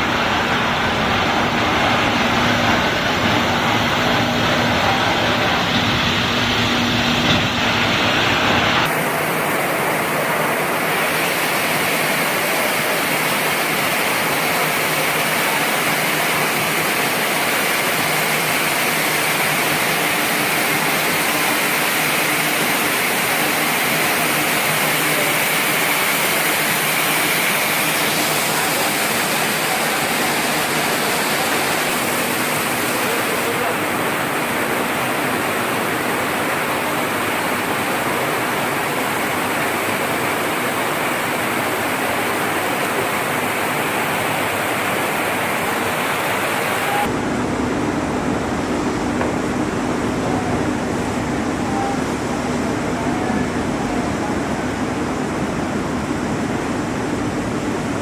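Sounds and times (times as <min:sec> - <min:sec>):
low machine rumble: 0:00.0 - 0:08.9
spraying water rushing: 0:00.0 - 0:47.1.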